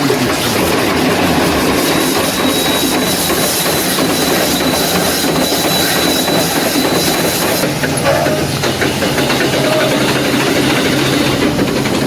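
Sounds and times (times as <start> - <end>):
steam engine clatter and hiss: 0.0 - 12.0
thin high whine: 1.6 - 8.6.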